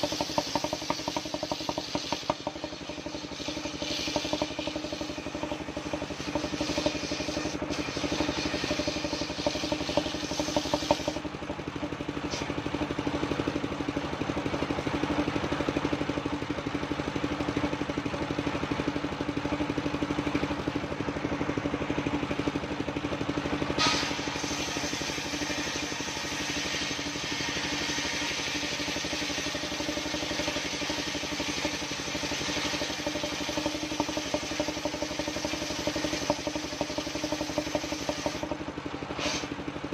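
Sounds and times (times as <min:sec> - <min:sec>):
sawmill engine running: 0:00.0 - 0:39.9
sharp short sound: 0:23.8 - 0:24.7.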